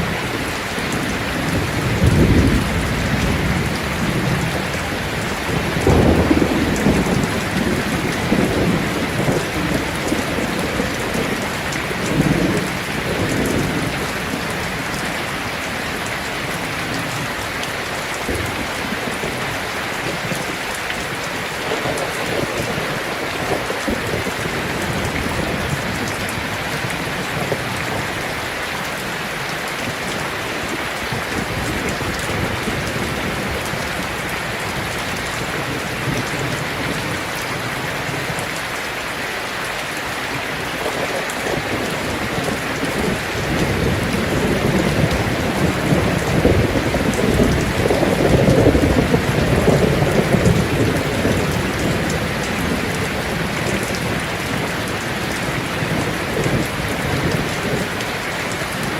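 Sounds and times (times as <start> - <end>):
rolling thunder: 0.0 - 15.0, 40.8 - 58.0
heavy rain on a tin roof: 0.0 - 58.9.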